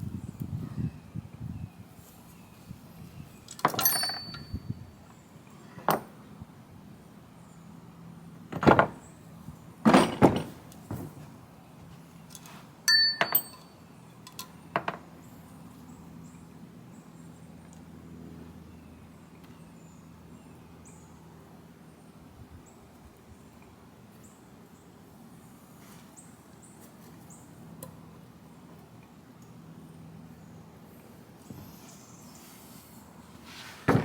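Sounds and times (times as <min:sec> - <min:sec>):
metal parts knocking and clinking: 0:03.5 - 0:04.5, 0:12.9 - 0:15.0.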